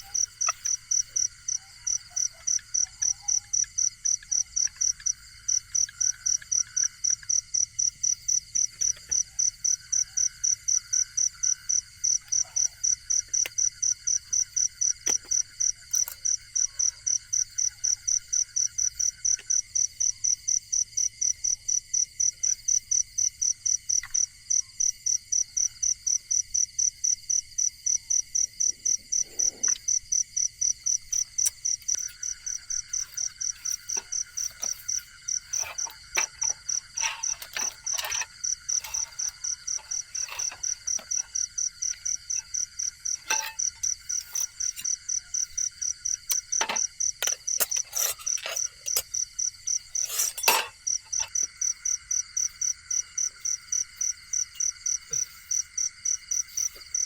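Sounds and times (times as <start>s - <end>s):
insects droning: 0.0s - 57.0s
high pulsed insect chirp: 29.8s - 57.0s.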